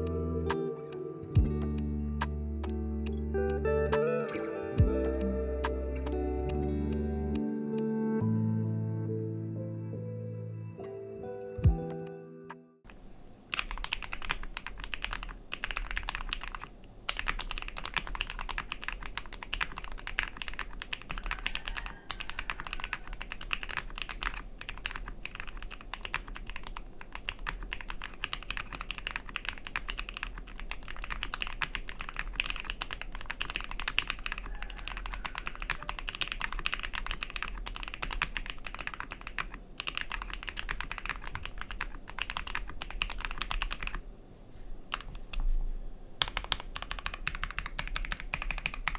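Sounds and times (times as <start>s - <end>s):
mechanical keyboard typing: 12.9s - 44.0s, 44.9s - 45.4s, 46.2s - 48.9s.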